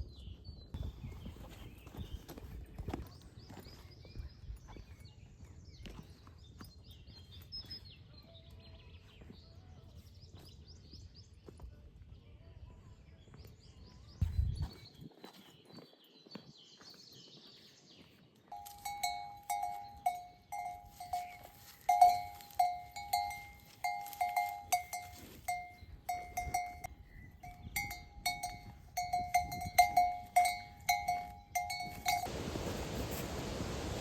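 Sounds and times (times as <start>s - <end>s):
metal livestock bell clanking: 18.5s - 32.3s.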